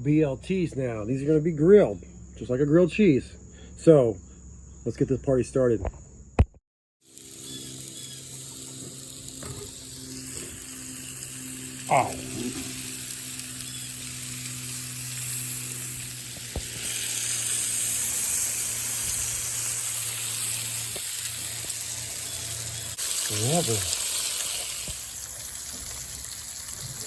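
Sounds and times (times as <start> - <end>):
bacon sizzling on griddle: 7.0 - 27.0.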